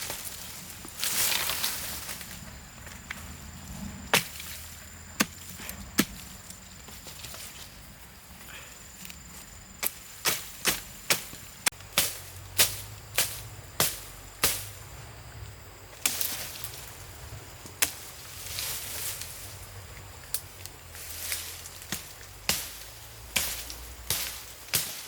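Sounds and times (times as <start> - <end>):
axe chopping wood: 4.1 - 4.5, 5.2 - 6.3, 9.8 - 14.7, 21.9 - 25.0.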